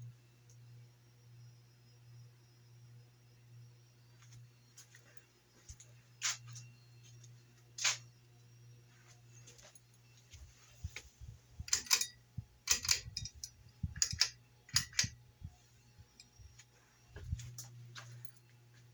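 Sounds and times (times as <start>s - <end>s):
steady low hum: 0.0s - 18.9s
sharp clicks and knocks: 10.9s - 15.2s.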